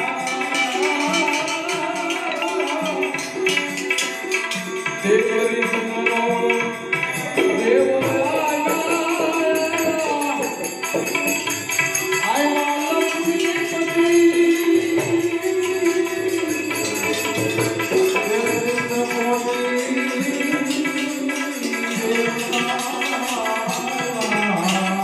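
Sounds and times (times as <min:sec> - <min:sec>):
held instrumental notes: 0:00.0 - 0:25.0
jingling hand percussion: 0:00.0 - 0:25.0
person singing devotional song: 0:00.0 - 0:25.0.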